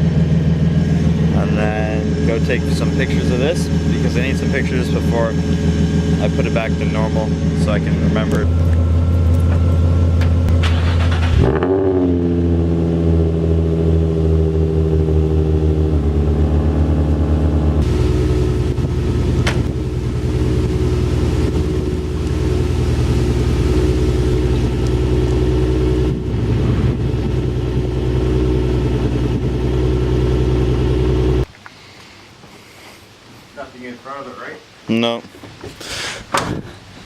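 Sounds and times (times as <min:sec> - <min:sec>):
van engine revving and idling: 0:00.0 - 0:31.5.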